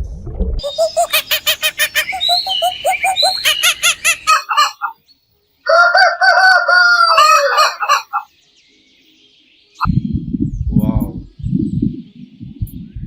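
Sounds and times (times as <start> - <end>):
chickens clucking: 0.6 - 5.0, 6.4 - 8.3
rooster crowing: 1.2 - 4.9, 5.7 - 8.3.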